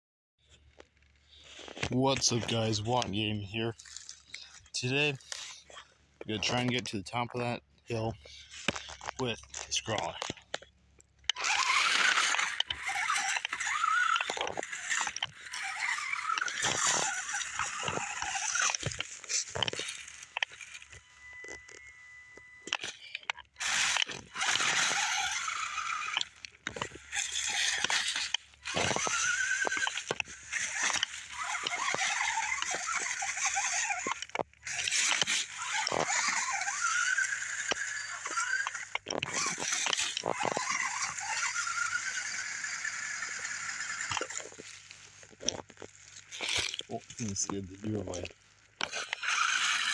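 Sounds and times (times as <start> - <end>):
electric motor and gears whining: 0.4 - 49.9
toy truck knocking on rocks: 11.3 - 20.3.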